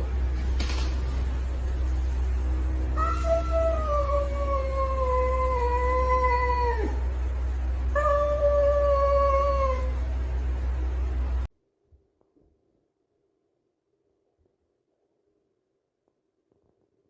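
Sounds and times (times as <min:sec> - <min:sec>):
steady low hum: 0:00.0 - 0:12.2.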